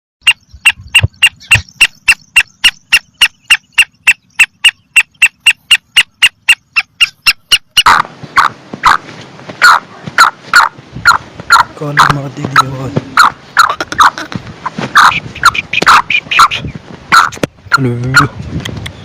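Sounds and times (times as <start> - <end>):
francolin calling: 0.2 - 8.0.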